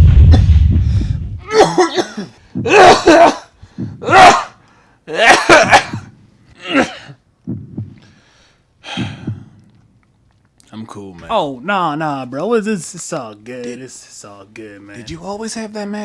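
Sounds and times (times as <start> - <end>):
man coughing hard: 1.4 - 7.2.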